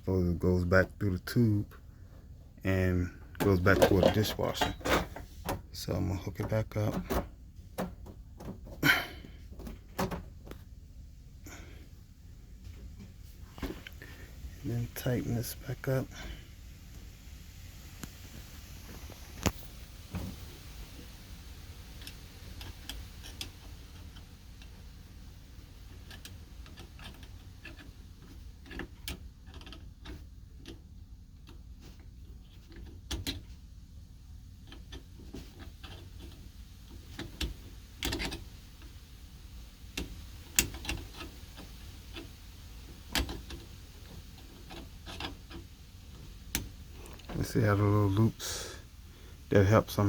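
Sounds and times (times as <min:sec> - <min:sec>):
low steady hum: 0:00.0 - 0:50.0
clicks and knocks of hose clamp: 0:40.0 - 0:42.3.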